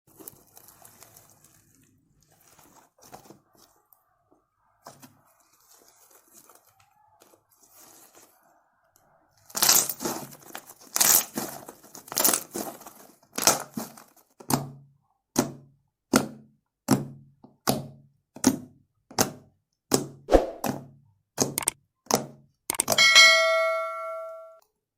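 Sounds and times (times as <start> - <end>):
slime crackling and tearing: 0.1 - 3.6, 9.4 - 14.4.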